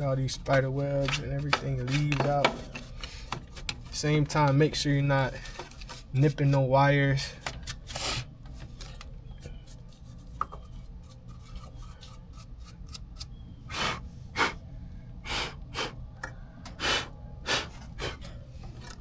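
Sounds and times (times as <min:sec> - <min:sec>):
low steady hum: 0:00.0 - 0:19.0
handling noise: 0:00.2 - 0:06.5.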